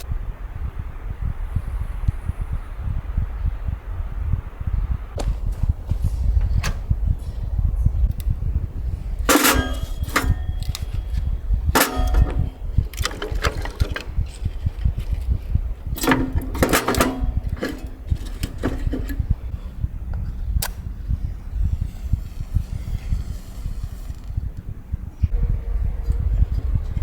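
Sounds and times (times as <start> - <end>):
wind buffeting microphone: 0.0 - 27.0
hard objects clattering: 9.2 - 19.6.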